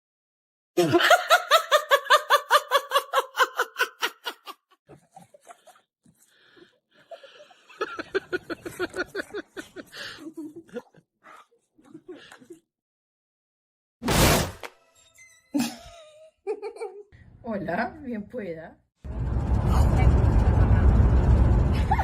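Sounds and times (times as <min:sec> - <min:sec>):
high-pitched laughter: 0:00.8 - 0:05.8.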